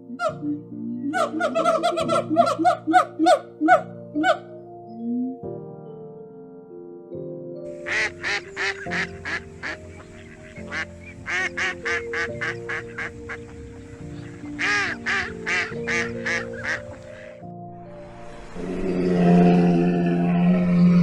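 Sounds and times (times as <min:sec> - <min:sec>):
instrumental background music: 0:00.0 - 0:20.4
waterfowl calling: 0:01.1 - 0:04.4, 0:07.8 - 0:17.4.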